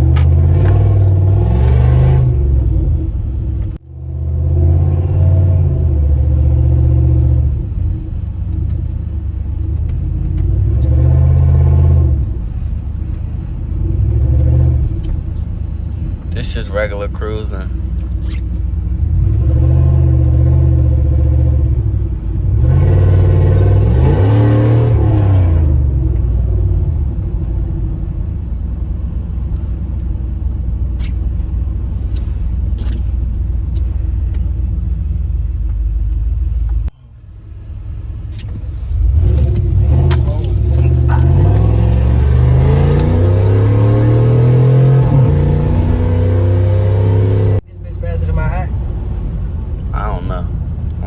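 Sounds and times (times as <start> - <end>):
car exhaust droning: 0.0 - 51.0
transmission shifting up: 0.0 - 51.0.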